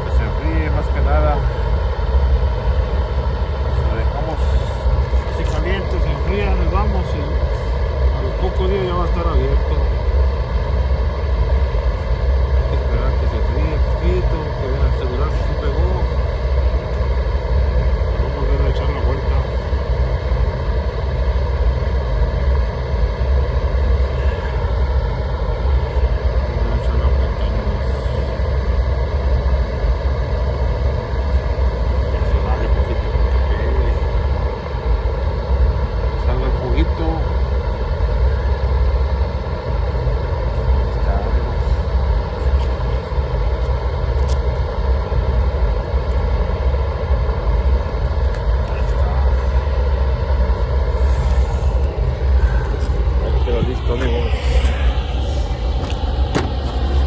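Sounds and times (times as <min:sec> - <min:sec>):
propane torch roaring: 0:00.0 - 0:57.0
roofing torch flame rushing: 0:46.6 - 0:57.0.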